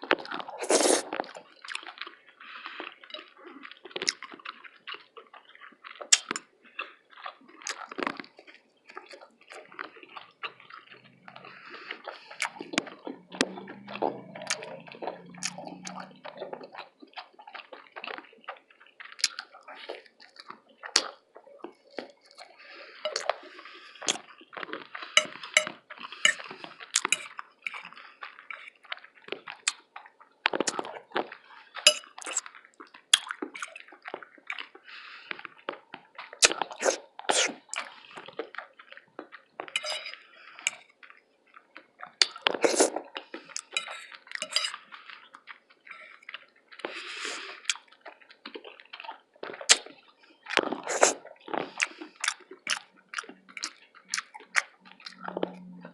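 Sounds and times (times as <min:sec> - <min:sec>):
wet chewing and mouth smacks: 0:00.0 - 0:55.9
sharp mouth clicks: 0:06.1 - 0:06.5, 0:10.4 - 0:16.4, 0:50.5 - 0:55.9.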